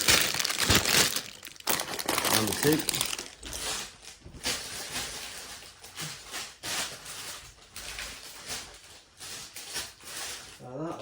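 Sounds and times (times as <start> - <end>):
plastic bags rustling and crinkling: 0.0 - 11.0.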